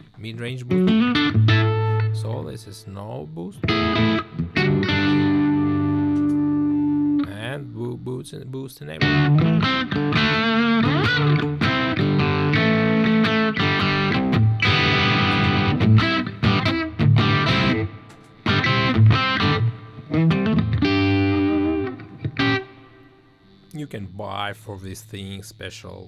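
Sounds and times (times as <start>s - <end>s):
overdriven electric guitar: 0.7s - 2.3s, 3.6s - 7.3s, 9.0s - 23.7s.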